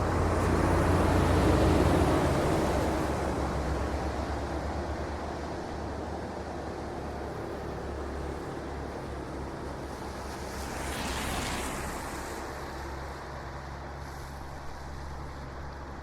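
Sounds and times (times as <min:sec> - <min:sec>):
vehicle passing close by: 0:10.3 - 0:12.8.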